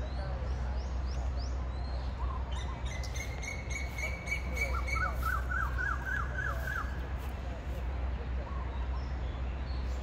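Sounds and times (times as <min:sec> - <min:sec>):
birds whistling and chirping: 0:00.0 - 0:07.0.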